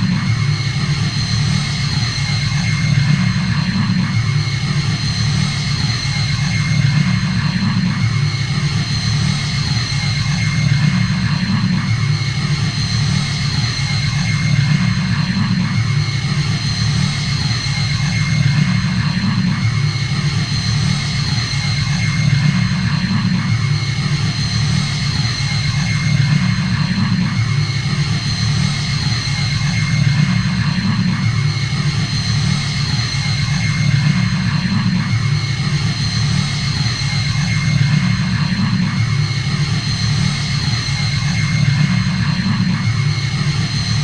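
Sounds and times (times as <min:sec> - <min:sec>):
deep engine hum: 0:00.0 - 0:44.0.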